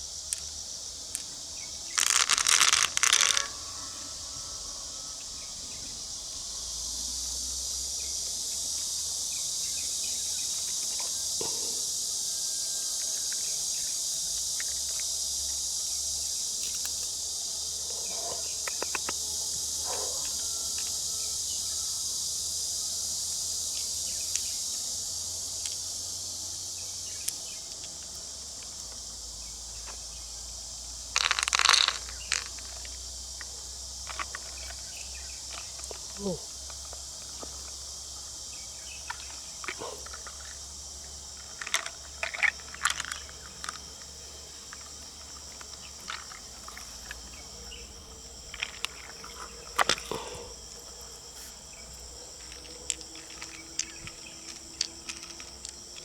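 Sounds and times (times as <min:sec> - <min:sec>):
insects chirping: 0:00.0 - 0:56.0
small clicks and scrapes: 0:02.0 - 0:03.6, 0:18.0 - 0:19.2, 0:31.2 - 0:33.5, 0:41.4 - 0:47.8, 0:48.5 - 0:56.0.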